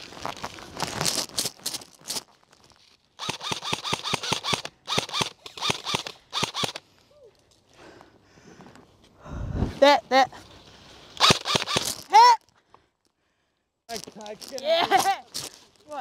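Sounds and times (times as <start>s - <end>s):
airsoft guns firing: 3.2s - 6.8s, 11.2s - 12.0s.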